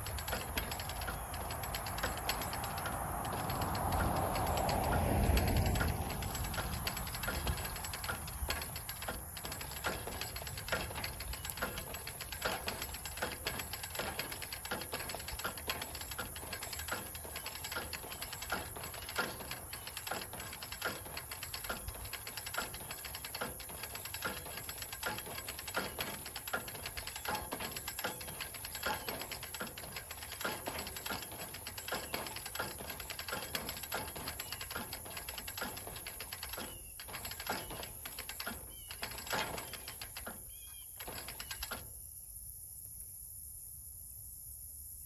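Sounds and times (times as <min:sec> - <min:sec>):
rapid clicking and crackling: 0:00.0 - 0:42.0.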